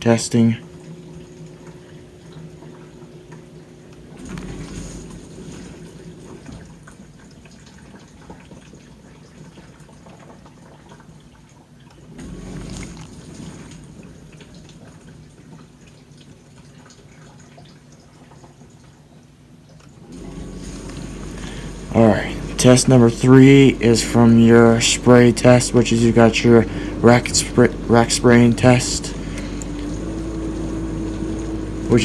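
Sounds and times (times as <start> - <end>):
low motor hum: 0.0 - 8.4, 12.1 - 15.6, 20.1 - 32.0
water spraying and sloshing: 0.0 - 32.0.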